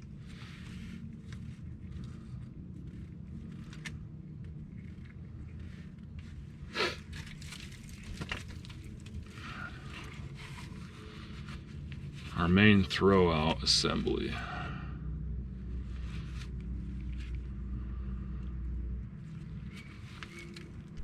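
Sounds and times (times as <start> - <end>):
handling noises rustling and clicks: 0.0 - 12.4, 19.1 - 21.0
steady low hum: 0.0 - 21.0.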